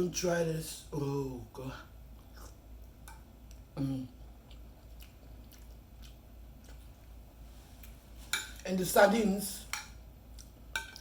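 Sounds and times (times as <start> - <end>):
person chewing food: 2.2 - 8.6, 10.3 - 11.0.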